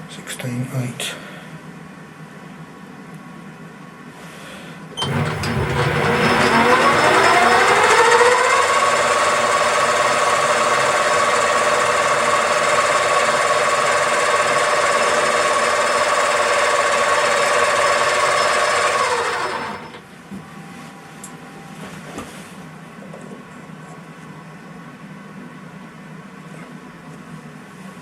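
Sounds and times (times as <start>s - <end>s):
lathe motor whining: 5.0s - 20.0s.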